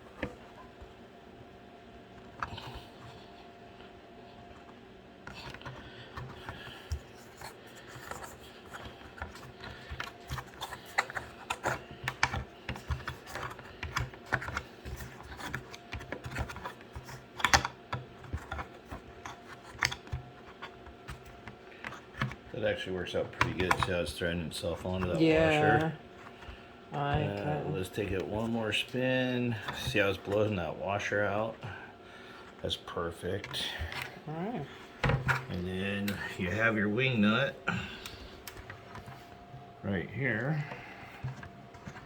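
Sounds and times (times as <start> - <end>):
plastic cup screwing clicks and scrapes: 5.3 - 22.4.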